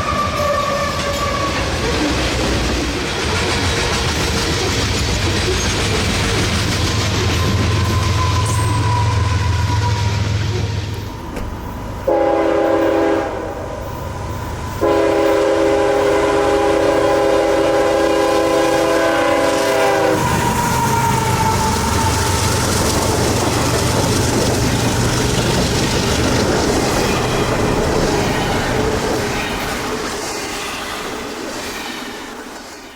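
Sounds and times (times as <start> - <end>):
train air horn blasts: 0.0 - 1.7, 7.4 - 11.0, 12.0 - 14.0, 14.7 - 22.5
train rolling past rumbling: 0.0 - 32.9.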